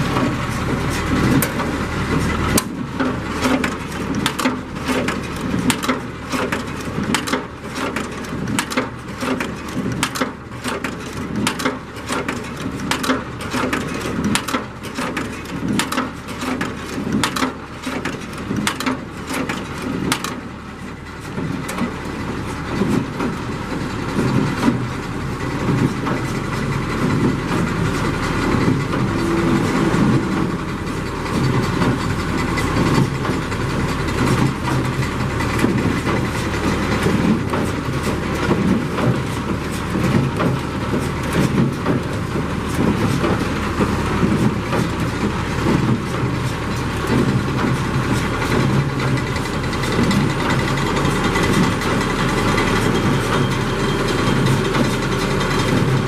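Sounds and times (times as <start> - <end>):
tractor engine drone: 0.0 - 56.0.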